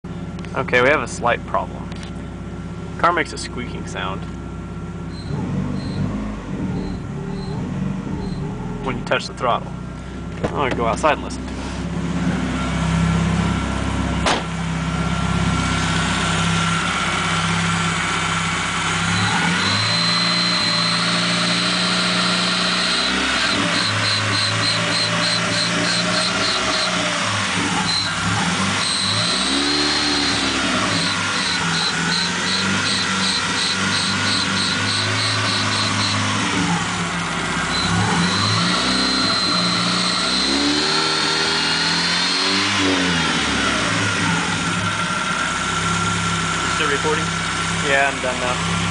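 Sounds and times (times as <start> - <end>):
car engine idling and revving: 0.0 - 48.9
high-pitched squeak or whine: 19.1 - 36.8, 37.7 - 43.0.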